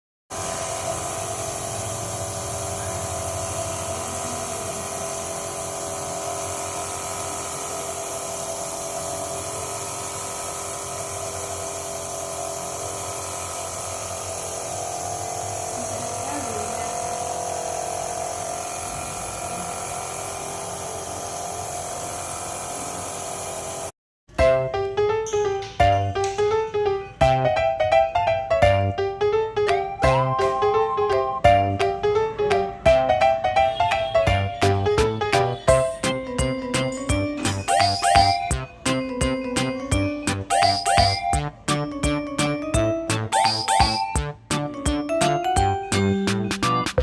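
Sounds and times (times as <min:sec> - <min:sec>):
compressor humming: 0:00.3 - 0:23.9.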